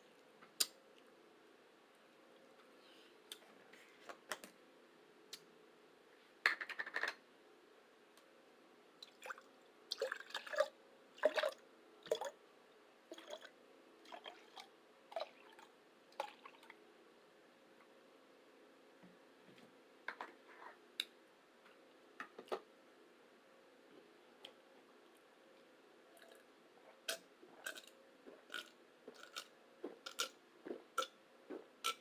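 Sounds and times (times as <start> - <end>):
person chewing and eating: 27.0 - 31.2.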